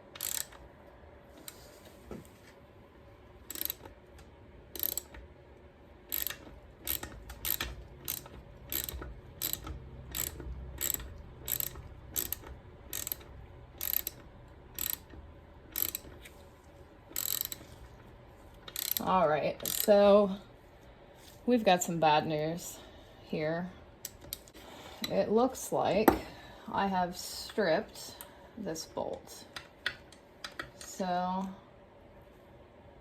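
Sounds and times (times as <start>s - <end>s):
ratchet wrench clicking: 0.1s - 0.6s, 3.5s - 3.9s, 4.7s - 5.2s, 6.1s - 16.2s, 17.2s - 17.7s, 18.6s - 20.0s.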